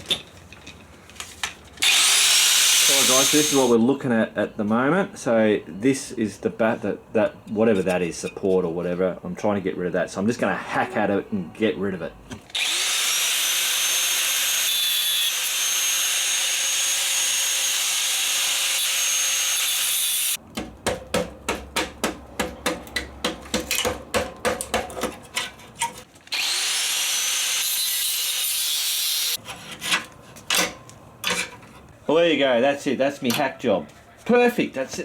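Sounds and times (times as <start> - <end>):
power cutting tool whining: 1.8 - 3.7, 12.5 - 20.4, 26.3 - 29.4
hand saw strokes: 1.8 - 3.8, 25.0 - 30.5.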